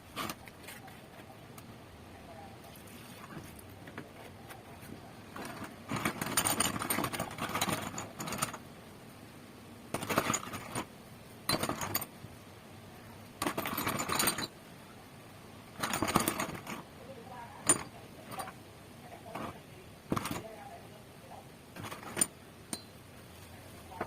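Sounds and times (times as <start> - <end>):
metal parts rattling and scraping: 0.0 - 1.2, 4.2 - 8.6, 9.9 - 10.9, 11.5 - 12.1, 13.4 - 14.6, 15.7 - 16.9, 17.6 - 18.6, 19.2 - 20.6, 21.8 - 23.0.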